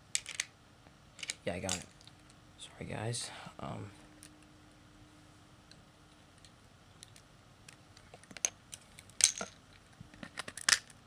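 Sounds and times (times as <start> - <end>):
plastic bricks clicking and clattering: 10.2 - 11.0.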